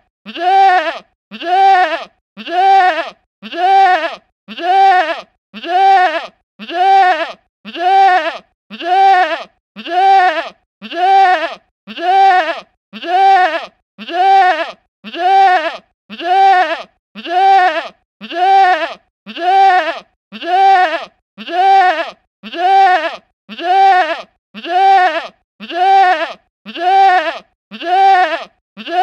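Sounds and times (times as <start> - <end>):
goat bleating: 0.3 - 29.0.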